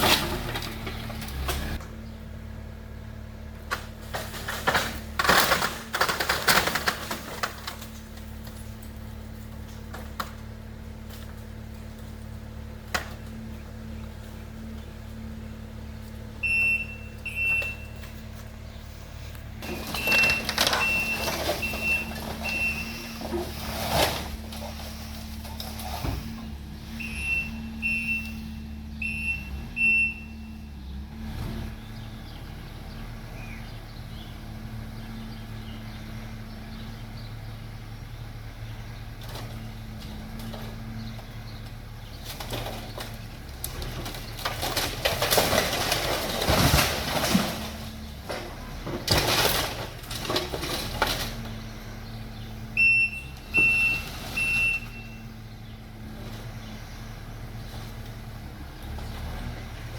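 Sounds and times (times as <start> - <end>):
structure crunching and crashing: 0.0 - 1.8, 3.6 - 14.5, 16.2 - 28.2, 41.6 - 55.2
diesel engine running: 0.0 - 59.9
backup alarm beeping: 16.4 - 18.1, 19.6 - 23.2, 27.0 - 28.4, 29.0 - 30.7, 52.8 - 55.3.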